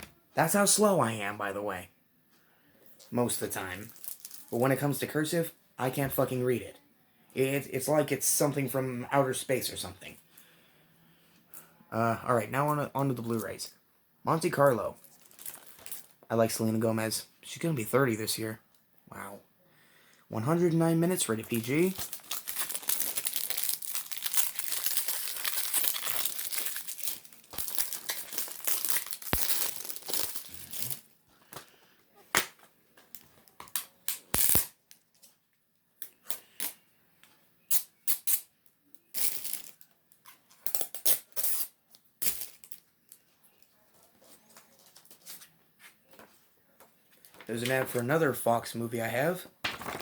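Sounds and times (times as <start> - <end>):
plastic wrap tearing and crinkling: 3.8 - 4.6, 15.0 - 16.2, 21.3 - 31.1, 32.4 - 35.2, 39.1 - 39.9, 40.6 - 42.9.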